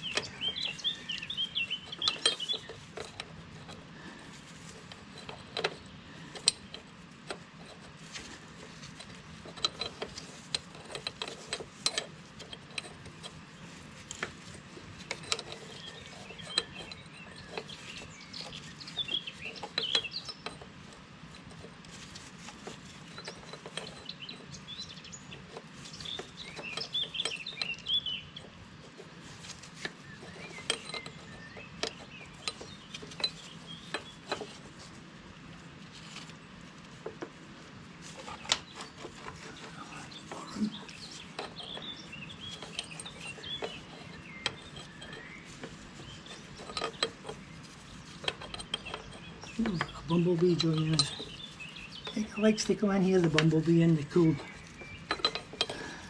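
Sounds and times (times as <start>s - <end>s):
birds chirping: 0.0s - 6.9s, 15.0s - 35.0s, 38.1s - 56.0s
hand tools clicking on metal fittings: 0.0s - 35.0s, 38.1s - 56.0s.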